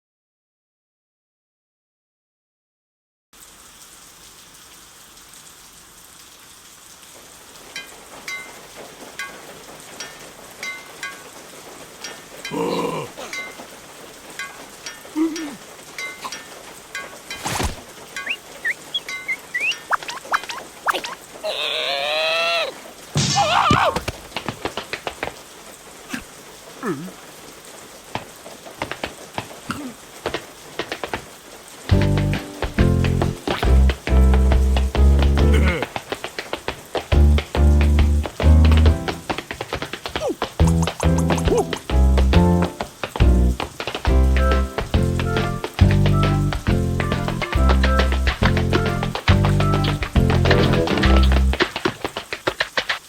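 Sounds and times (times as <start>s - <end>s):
rain hissing: 3.4s - 53.0s
water-drop plinks: 7.7s - 9.4s, 10.0s - 11.4s, 14.4s - 21.2s
short sliding squeaks: 17.4s - 21.2s
cartoon character cry: 21.4s - 24.0s.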